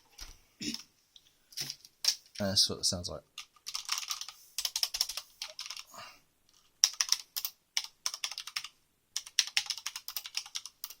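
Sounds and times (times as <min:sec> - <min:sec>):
mechanical keyboard typing: 0:03.4 - 0:05.9, 0:06.8 - 0:11.0.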